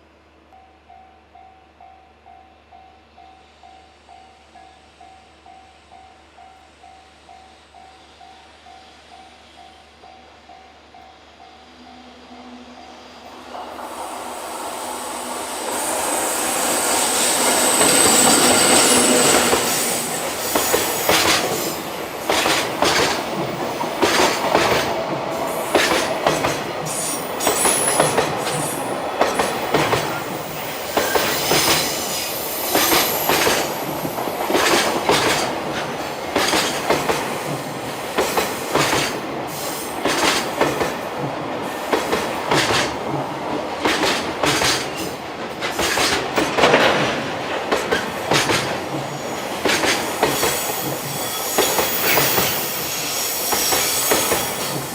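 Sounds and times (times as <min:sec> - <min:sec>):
freight train passing: 0:00.0 - 0:54.9
wheels clacking over rail joints: 0:17.4 - 0:31.9, 0:32.7 - 0:37.4, 0:41.9 - 0:52.5
wheel flange squeal: 0:50.4 - 0:54.6.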